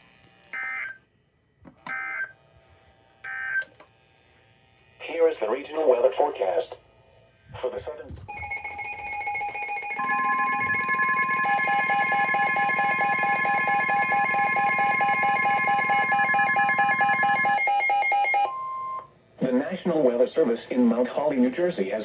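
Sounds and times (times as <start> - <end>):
fast on-off beeping: 8.2 - 19.0
piercing alert tone: 8.3 - 18.5
electronic tones: 8.3 - 19.1.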